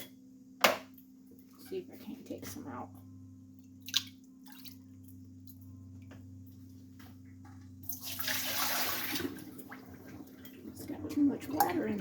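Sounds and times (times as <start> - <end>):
steady low hum: 0.0 - 8.0
water splashing and pouring: 7.8 - 10.9.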